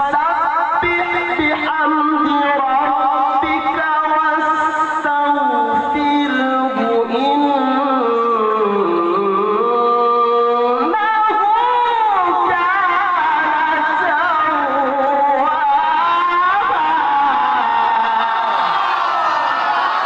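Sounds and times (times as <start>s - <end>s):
man reciting melodically: 0.0s - 18.5s
crowd cheering and shouting: 13.2s - 20.0s.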